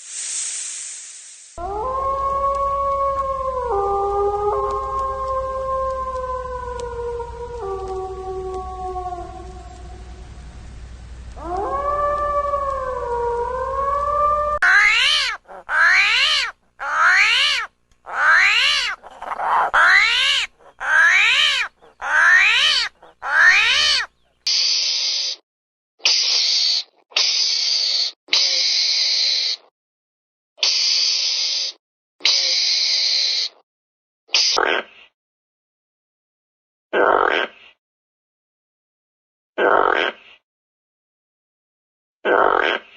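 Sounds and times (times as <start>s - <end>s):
short hissing bursts: 0.0s - 1.6s
long wavering animal call: 1.6s - 10.2s, 11.4s - 24.1s
short rising animal calls: 14.1s - 24.1s.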